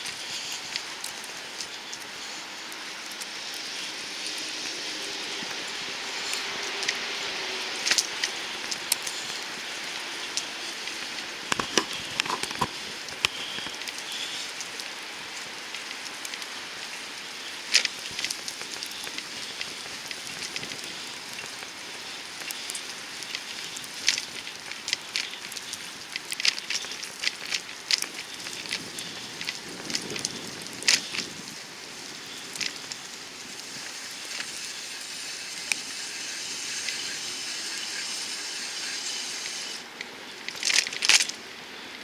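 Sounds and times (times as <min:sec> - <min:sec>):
wet snow hissing: 0:00.0 - 0:12.1, 0:12.7 - 0:39.9.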